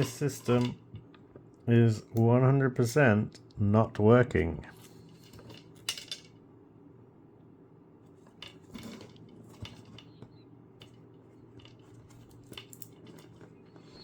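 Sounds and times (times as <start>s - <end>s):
steady low hum: 0.0s - 14.0s
faint clicks of small parts: 8.2s - 14.0s.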